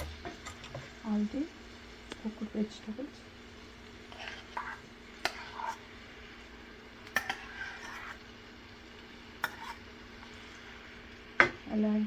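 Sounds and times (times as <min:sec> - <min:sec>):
spoon scraping cooking pan: 0:00.0 - 0:01.0, 0:03.4 - 0:11.6.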